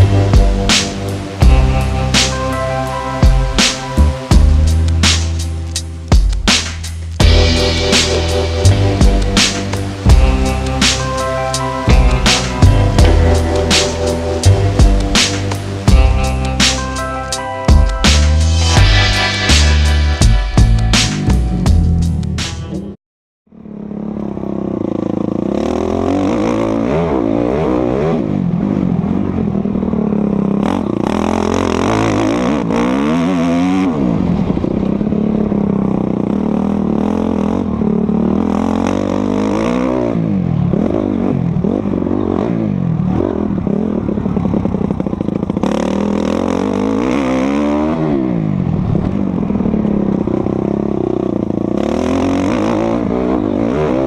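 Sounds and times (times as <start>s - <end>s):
motocross bike engine revving: 24.3s - 54.0s.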